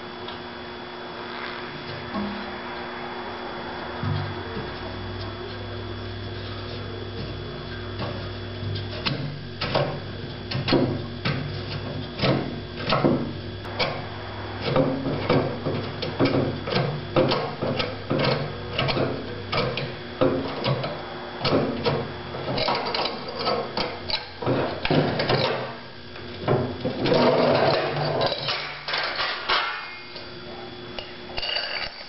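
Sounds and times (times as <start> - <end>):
faint steady hum: 0.0 - 32.0.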